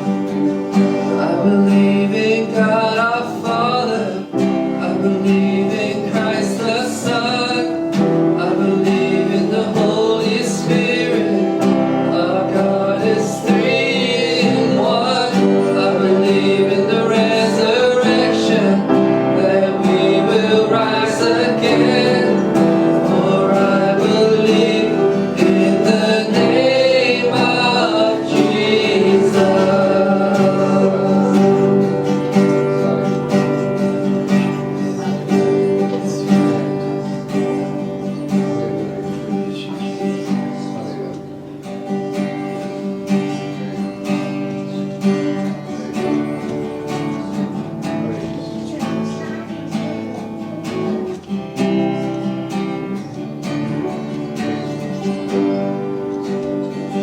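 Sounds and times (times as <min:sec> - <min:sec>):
person singing: 0:00.0 - 0:41.6
acoustic guitar strumming: 0:00.0 - 0:57.0.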